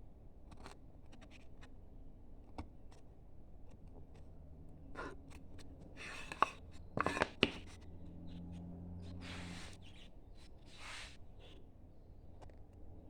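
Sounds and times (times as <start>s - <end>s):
chisel scraping wood: 5.0s - 7.8s.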